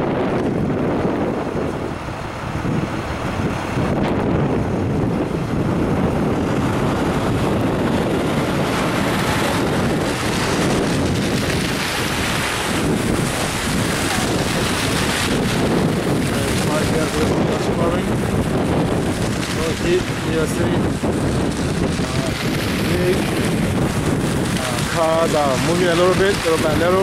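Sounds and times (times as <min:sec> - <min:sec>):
wind buffeting microphone: 0:00.0 - 0:27.0.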